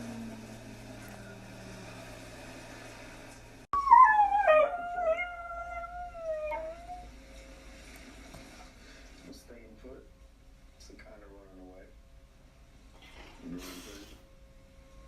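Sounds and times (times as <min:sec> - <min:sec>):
faint steady hum: 0:00.0 - 0:15.0
dog howling: 0:03.8 - 0:07.1.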